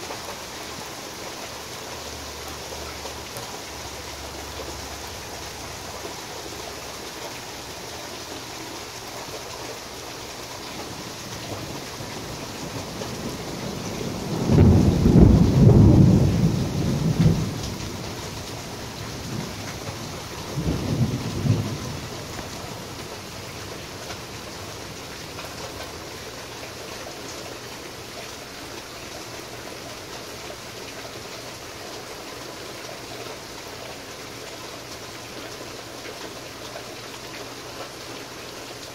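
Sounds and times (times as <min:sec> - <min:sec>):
steady rain: 0:00.0 - 0:38.9
thunder rumbling: 0:11.3 - 0:23.8.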